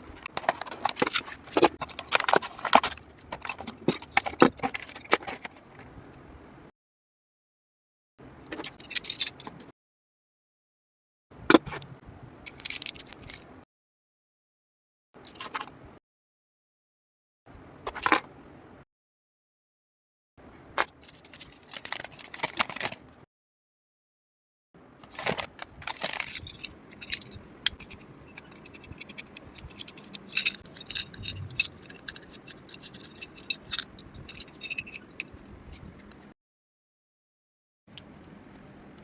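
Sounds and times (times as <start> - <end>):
small metal rattles and scrapes: 0.0 - 6.2, 20.8 - 23.2, 25.0 - 36.3.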